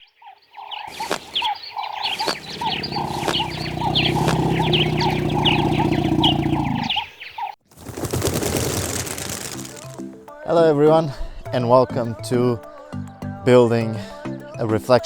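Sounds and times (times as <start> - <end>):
high chirps: 0.8 - 7.1
croaking calls: 0.8 - 8.8.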